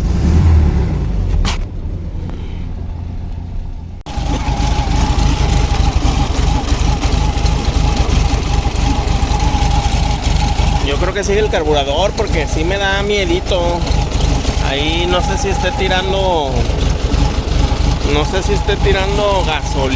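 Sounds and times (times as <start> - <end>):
car engine bogging at full throttle: 0.0 - 19.9
steady whine: 4.1 - 19.9.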